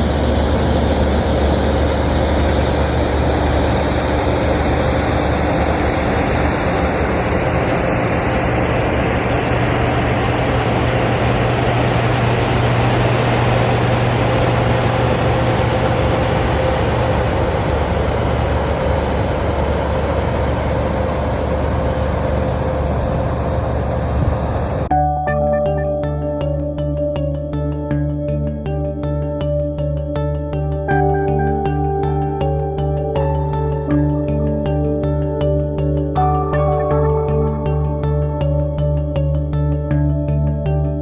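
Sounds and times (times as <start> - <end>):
heavy engine drone: 0.0 - 25.0
steady machine whine: 0.0 - 25.0.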